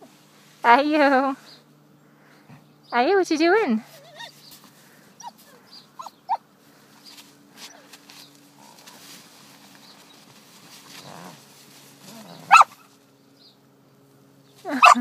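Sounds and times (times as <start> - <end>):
puppy whining: 3.8 - 6.4.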